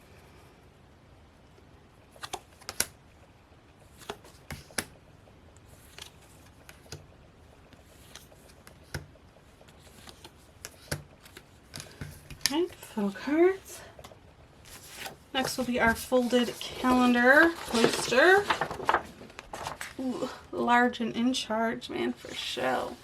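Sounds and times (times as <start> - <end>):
cards tapping and flicking: 2.2 - 3.0.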